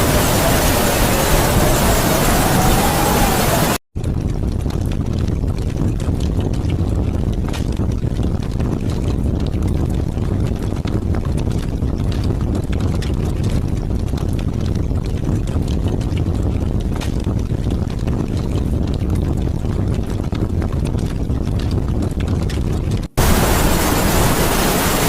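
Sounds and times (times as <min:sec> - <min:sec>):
heavy rain spattering: 0:00.0 - 0:03.8, 0:23.0 - 0:25.0
strong wind rushing: 0:00.0 - 0:25.0.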